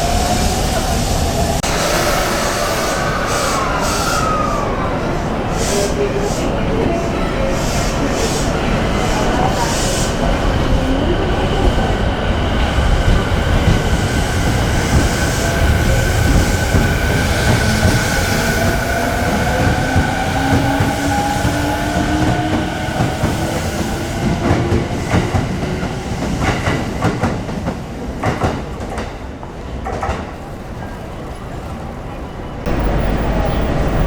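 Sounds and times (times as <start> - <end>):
train wheels rumbling: 0.0 - 34.0
electric train motor whine: 1.6 - 6.1.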